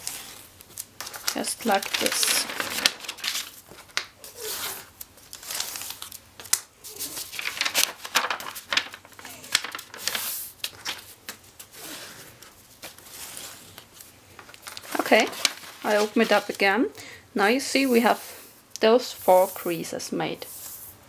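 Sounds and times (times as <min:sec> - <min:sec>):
paper rustling and crinkling: 0:00.0 - 0:16.7
paper crease scraping: 0:01.0 - 0:06.1, 0:06.9 - 0:16.6.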